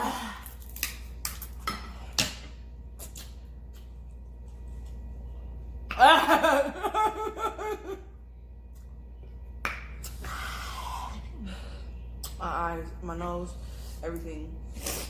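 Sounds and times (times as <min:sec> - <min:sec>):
woman laughing: 0:06.0 - 0:08.2.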